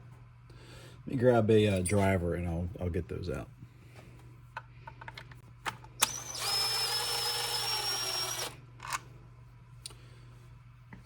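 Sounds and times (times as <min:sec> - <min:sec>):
powered screwdriver whine: 0:06.0 - 0:09.0.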